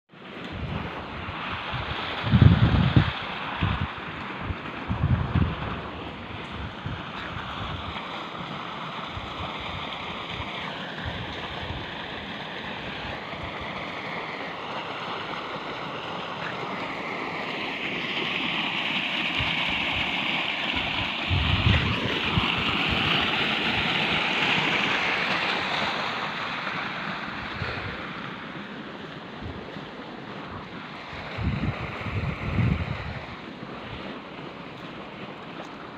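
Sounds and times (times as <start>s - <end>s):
wind buffeting microphone: 0.4s - 8.1s, 20.8s - 24.4s, 27.3s - 35.5s
steady rushing hiss: 0.7s - 35.4s.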